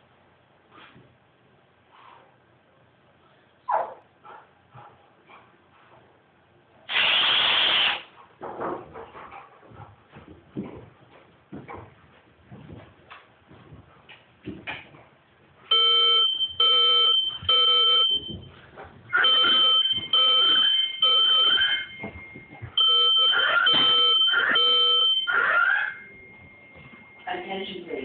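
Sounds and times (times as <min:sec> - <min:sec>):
fire alarm horn pulses: 0:15.7 - 0:18.5, 0:19.1 - 0:27.1.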